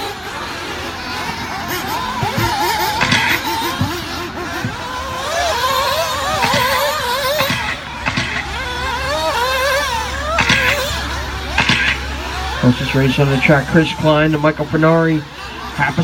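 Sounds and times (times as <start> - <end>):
small engines whining: 0.0 - 16.0
short knocks: 2.1 - 12.1.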